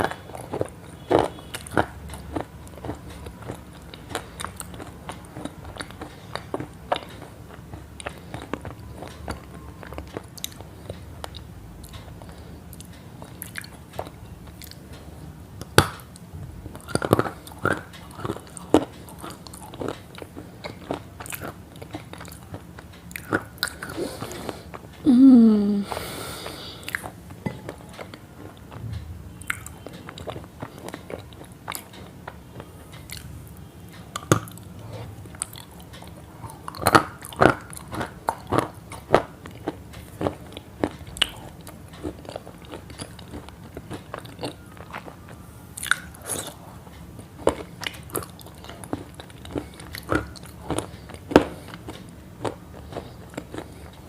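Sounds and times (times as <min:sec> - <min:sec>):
crunchy chewing: 0:00.0 - 0:25.0, 0:26.4 - 0:54.0
short falling vocal sound: 0:25.1 - 0:25.9.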